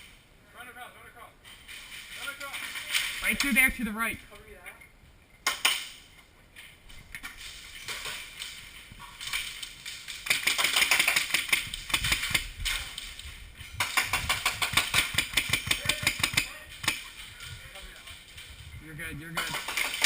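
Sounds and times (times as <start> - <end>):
airsoft guns firing rapidly: 10.2 - 12.5, 13.8 - 17.1.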